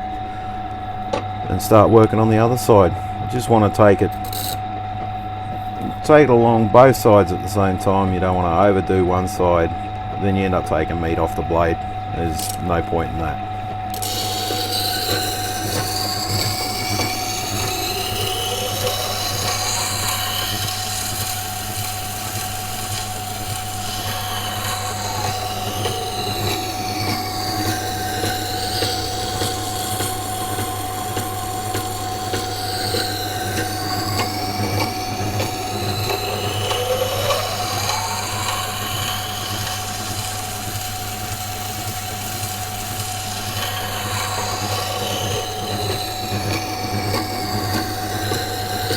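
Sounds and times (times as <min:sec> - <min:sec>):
grinder motor hum: 0:00.0 - 0:48.9
knife blade grinding on stone: 0:13.9 - 0:41.0.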